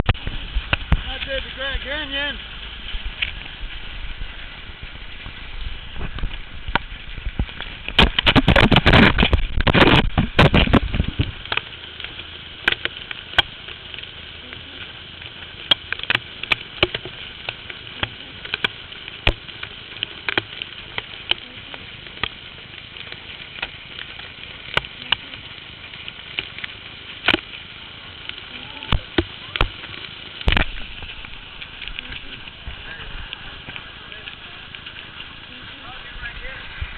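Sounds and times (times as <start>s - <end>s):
hailstones striking surfaces: 0.0s - 36.9s.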